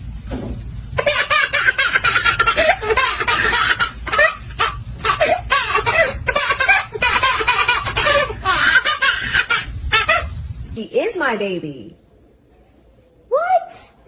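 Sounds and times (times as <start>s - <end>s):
bright laughing bursts: 1.0s - 10.3s.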